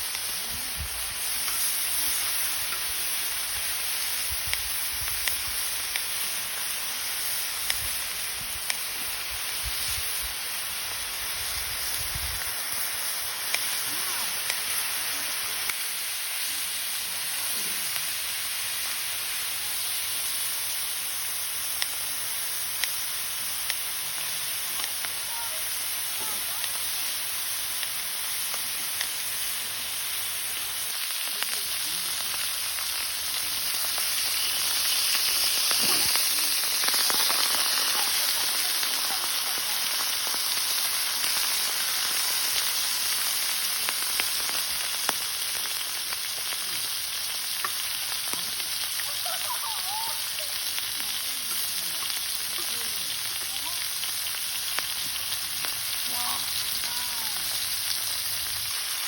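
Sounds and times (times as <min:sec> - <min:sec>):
meat sizzling in fat: 0:00.0 - 0:59.0.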